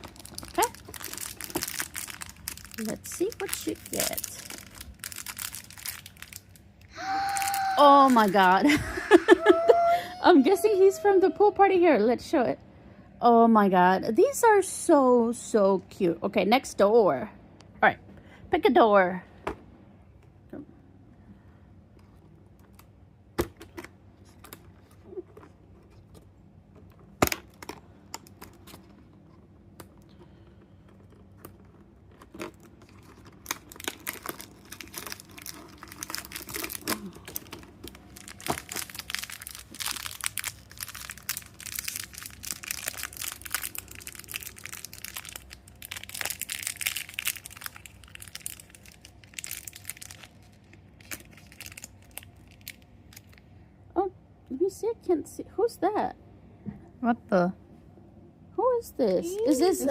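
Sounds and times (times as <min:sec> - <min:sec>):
packaging crinkling and tearing: 0:00.0 - 0:08.7, 0:31.0 - 0:53.4.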